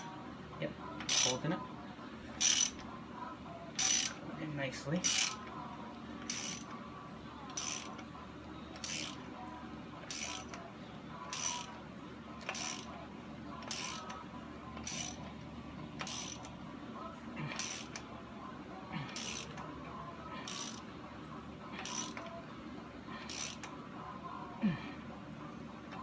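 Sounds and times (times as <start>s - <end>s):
ratchet wrench clicking: 1.0s - 1.4s, 2.4s - 2.8s, 3.8s - 4.2s, 5.0s - 5.5s, 6.2s - 6.7s, 7.6s - 8.0s, 8.8s - 9.2s, 10.1s - 10.6s, 11.3s - 11.7s, 12.4s - 12.9s, 13.6s - 14.2s, 14.8s - 15.2s, 16.0s - 16.5s, 17.5s - 18.0s, 19.2s - 19.6s, 20.4s - 20.8s, 21.8s - 22.3s, 23.2s - 23.7s.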